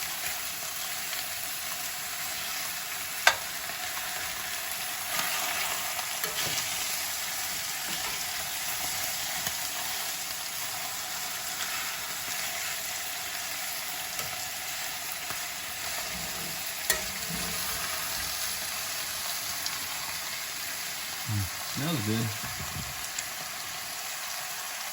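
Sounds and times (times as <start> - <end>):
fat sizzling in a skillet: 0.0 - 24.9
grease popping: 3.2 - 3.6, 15.3 - 19.0.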